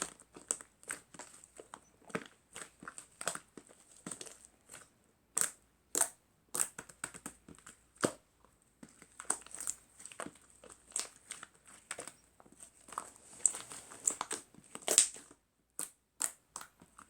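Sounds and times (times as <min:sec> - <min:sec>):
slime crackling and popping: 0:00.0 - 0:08.2, 0:08.9 - 0:17.0.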